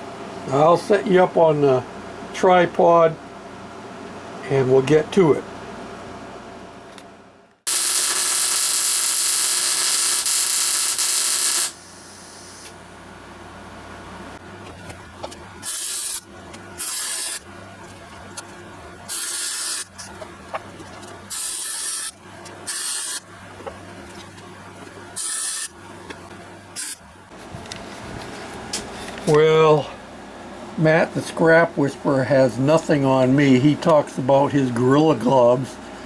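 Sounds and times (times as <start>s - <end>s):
electric arc welding: 7.7s - 12.8s, 15.6s - 20.2s, 21.2s - 23.4s, 25.2s - 25.8s, 26.7s - 27.0s.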